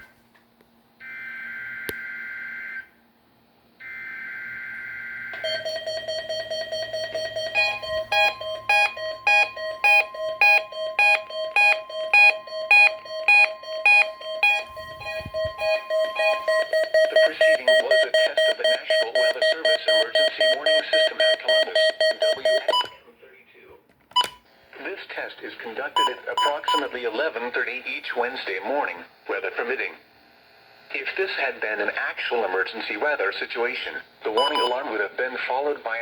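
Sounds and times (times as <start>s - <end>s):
steady warning alarm tone: 3.8s - 23.0s, 26.0s - 27.1s, 34.3s - 34.9s
fast electronic alarm beeping: 5.4s - 23.0s, 26.0s - 27.0s, 34.3s - 34.9s
buzzy two-pitch data tone: 5.8s - 18.1s.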